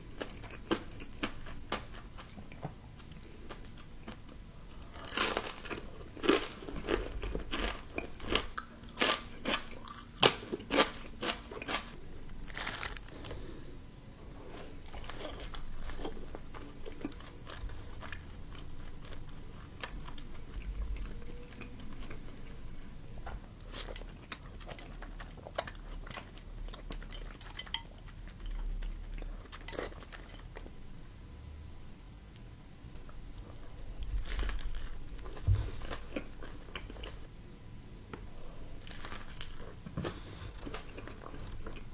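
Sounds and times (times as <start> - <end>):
steady chewing: 0.0 - 13.6, 14.4 - 30.7, 33.1 - 37.3, 38.1 - 41.9
crisp crunching bites: 12.4 - 13.1.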